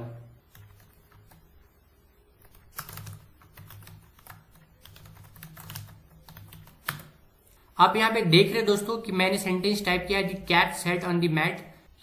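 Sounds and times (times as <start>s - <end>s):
keyboard keys clicking: 2.4s - 7.2s.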